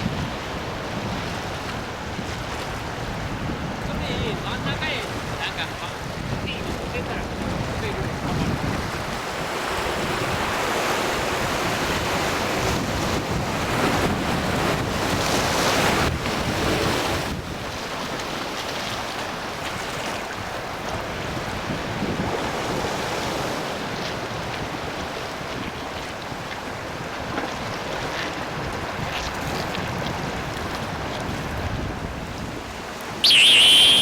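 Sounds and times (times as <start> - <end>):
wind buffeting microphone: 0.0 - 17.9
sea surf washing: 33.2 - 34.0.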